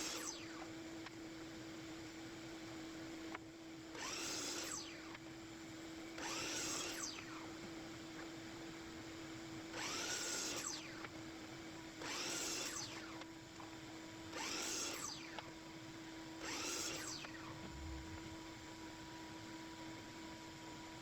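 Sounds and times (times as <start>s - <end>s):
steady hum: 17.3s - 19.2s.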